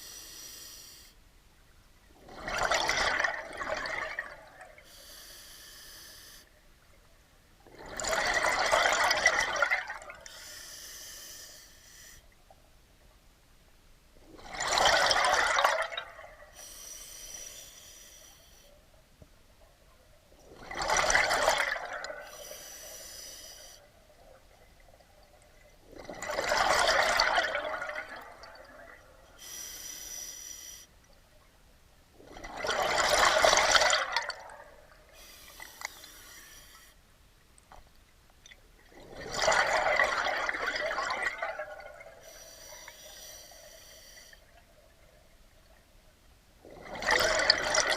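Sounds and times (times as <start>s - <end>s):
regulator inhalation hiss: 0.0s - 1.2s, 4.9s - 6.5s, 10.3s - 12.3s, 16.6s - 18.7s, 22.4s - 23.8s, 29.4s - 30.9s, 35.2s - 37.0s, 42.2s - 44.4s
rush of bubbles: 2.2s - 4.8s, 7.7s - 10.3s, 14.2s - 16.7s, 20.4s - 22.6s, 23.9s - 29.2s, 32.2s - 36.1s, 38.8s - 42.4s, 46.6s - 47.9s.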